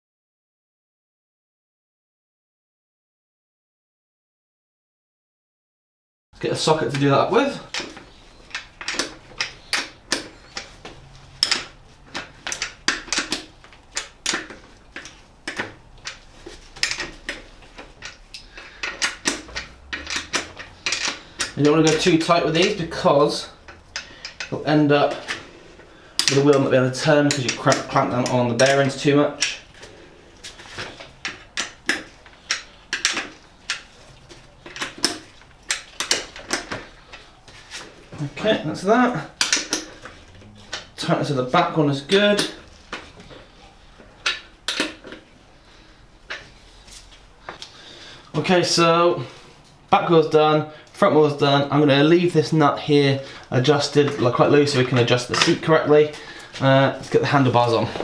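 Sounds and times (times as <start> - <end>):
small metal clicks and knocks: 7.7 - 25.4, 26.1 - 37.3, 39.3 - 41.0, 44.1 - 45.2
socket ratchet clicking: 16.8 - 22.8.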